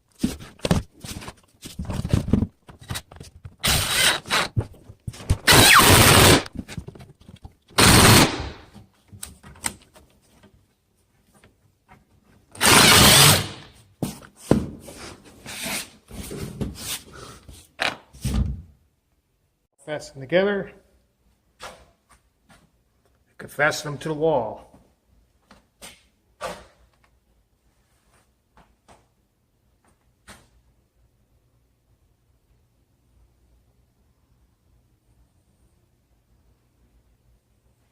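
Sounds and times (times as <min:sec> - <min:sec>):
power drill driving screws: 0:03.6 - 0:04.6, 0:05.5 - 0:06.5, 0:07.8 - 0:08.5, 0:12.6 - 0:13.7.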